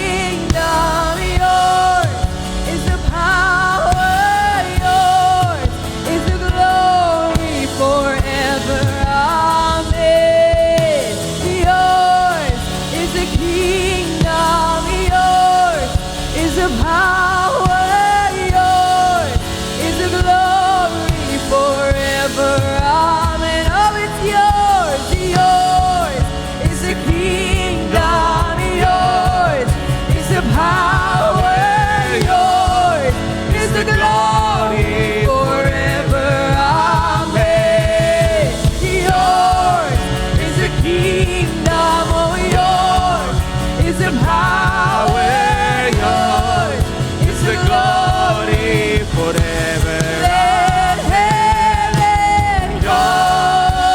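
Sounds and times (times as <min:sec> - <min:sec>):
band playing worship music: 0:00.0 - 0:53.9
person singing: 0:00.0 - 0:53.9.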